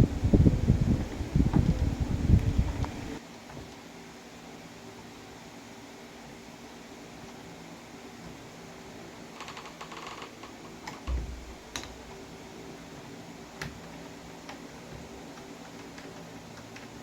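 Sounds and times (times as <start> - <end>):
small metal clicks and rattles: 9.3 - 11.1
dull thump: 11.1 - 11.6.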